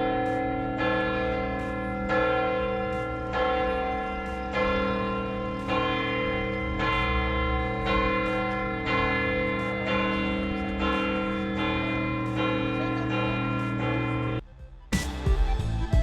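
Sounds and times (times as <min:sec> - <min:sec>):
church bell tolling: 0:00.0 - 0:14.4.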